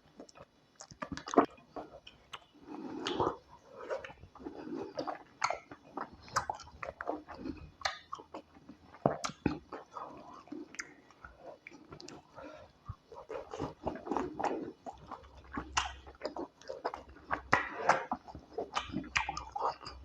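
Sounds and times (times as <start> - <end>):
chewing and lip smacking: 0.1 - 20.0.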